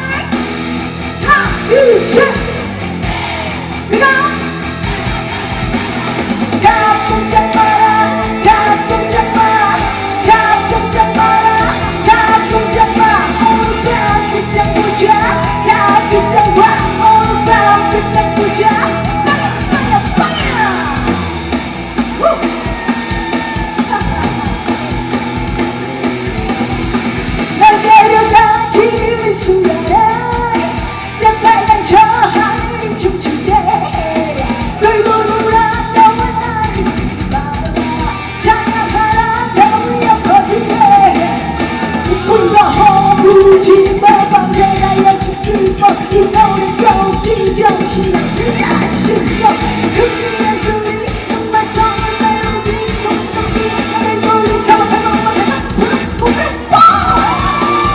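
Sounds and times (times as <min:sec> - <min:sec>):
live rock band playing: 0:00.0 - 0:57.9
woman singing: 0:01.2 - 0:02.6, 0:06.6 - 0:21.2, 0:27.6 - 0:57.6.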